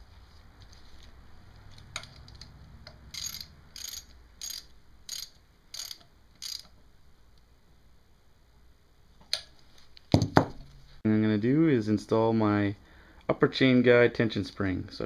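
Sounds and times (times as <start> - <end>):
ratchet wrench clicking: 2.9 - 6.8.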